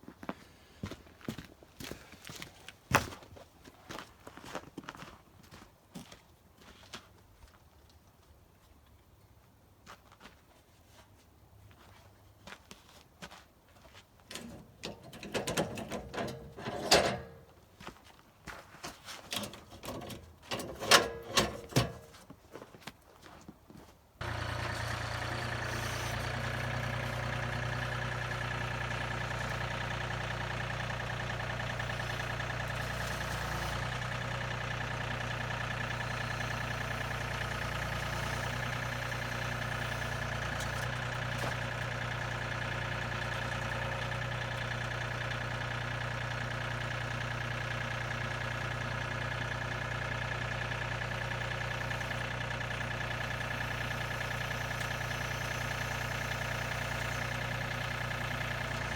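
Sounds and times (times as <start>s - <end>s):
engine idling: 14.3s - 17.5s, 19.3s - 22.2s, 24.2s - 58.9s.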